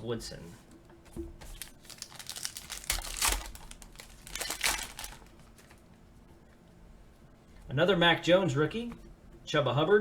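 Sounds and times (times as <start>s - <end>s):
wrapper crinkling and tearing: 1.4s - 5.8s.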